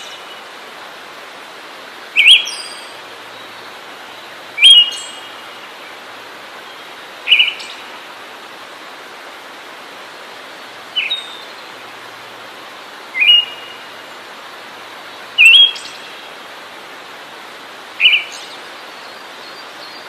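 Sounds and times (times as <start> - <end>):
steady background hiss: 0.0 - 20.0
songbird calls: 2.2 - 6.0, 6.7 - 7.9, 10.9 - 11.8, 13.1 - 14.0, 15.1 - 16.4, 18.0 - 20.0.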